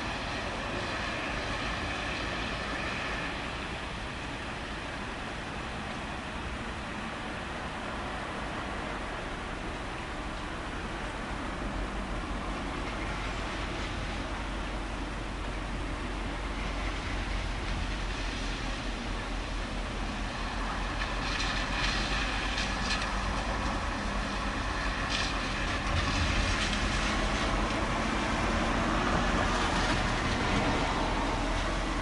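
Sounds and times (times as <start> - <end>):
rushing rain noise: 0.0 - 32.0.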